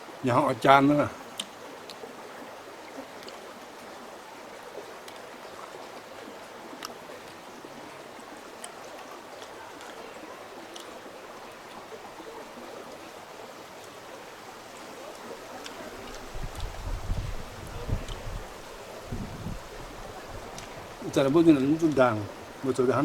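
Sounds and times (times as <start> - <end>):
running water: 0.0 - 23.0
faint ticks: 1.3 - 2.1, 3.1 - 3.6, 5.0 - 5.9, 14.7 - 17.2.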